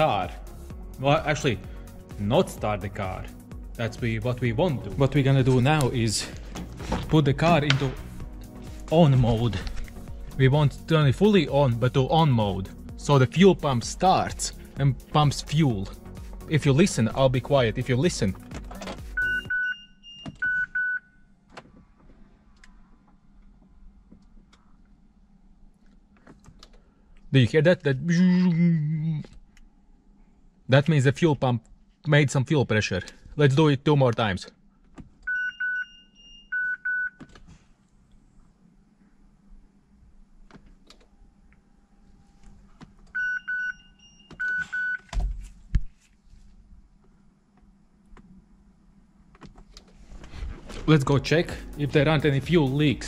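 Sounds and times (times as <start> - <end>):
low thumps: 5.0 - 8.6
dashboard warning chime beeping: 18.8 - 21.2, 35.3 - 37.2, 43.2 - 45.1
dashboard chime beeps: 19.2 - 21.0.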